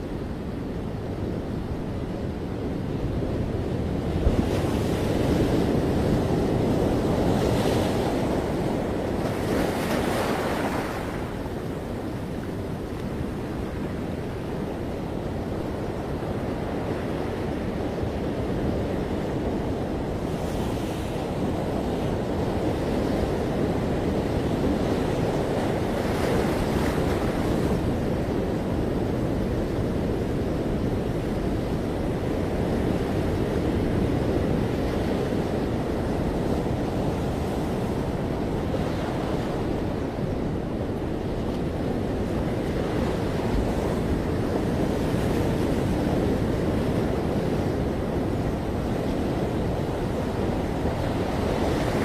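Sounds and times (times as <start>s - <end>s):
ocean surf on beach: 0.0s - 52.0s
waves breaking: 4.3s - 14.8s.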